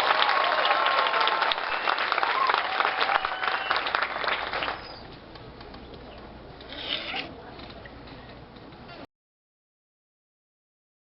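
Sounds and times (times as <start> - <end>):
audience applauding: 0.0 - 5.1
people cheering: 0.0 - 5.1.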